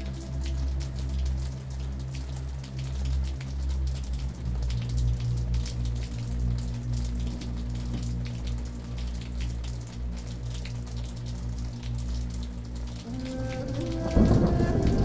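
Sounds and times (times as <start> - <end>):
low steady drone: 0.0 - 15.0
rain drops pattering: 0.0 - 15.0
high sustained tones: 13.1 - 15.0.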